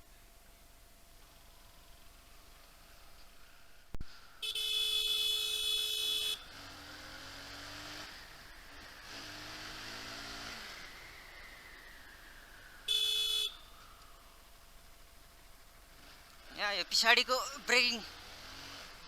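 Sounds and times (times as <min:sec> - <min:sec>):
vehicle horn: 0:04.4 - 0:06.5, 0:12.9 - 0:13.6
faint falling-pitch sounds: 0:08.0 - 0:12.9.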